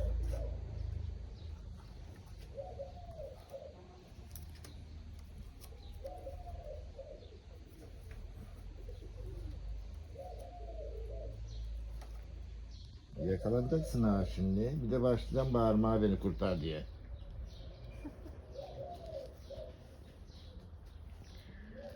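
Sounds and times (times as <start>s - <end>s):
pigeons cooing: 0.0s - 21.9s.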